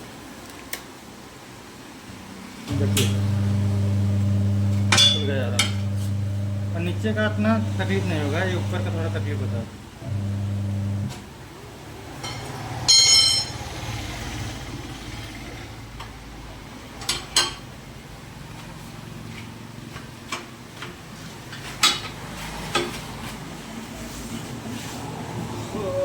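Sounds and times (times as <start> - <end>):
low machine hum: 2.7 - 11.2
loud ringing metal clang: 4.9 - 5.3, 12.2 - 13.6.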